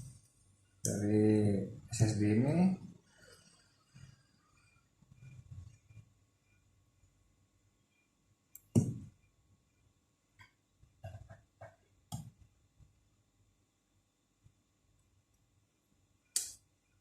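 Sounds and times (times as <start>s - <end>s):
handling knocks and clicks on laptop: 8.6s - 9.2s, 10.4s - 12.4s.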